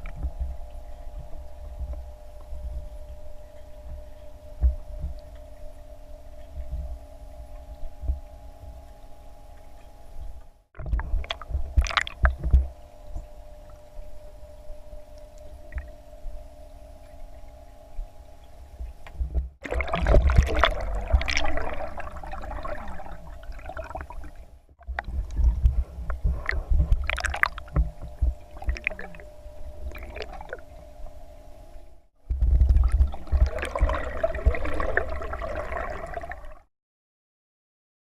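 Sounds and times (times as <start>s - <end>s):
faint steady hum: 0.0s - 36.7s
water splashing and gurgling: 10.8s - 14.0s, 18.9s - 31.2s, 32.3s - 36.7s.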